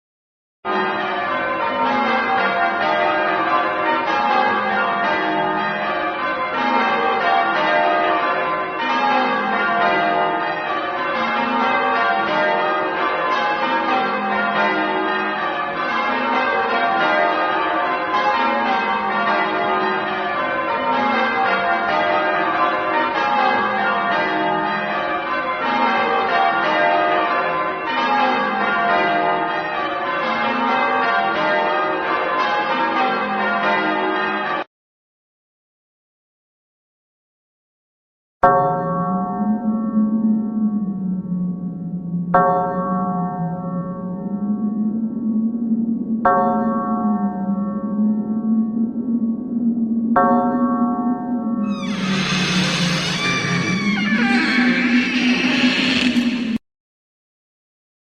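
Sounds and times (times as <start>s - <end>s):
church bells ringing a peal: 0.7s - 34.7s, 38.4s - 40.0s, 42.3s - 44.4s, 46.2s - 48.1s, 50.2s - 54.6s.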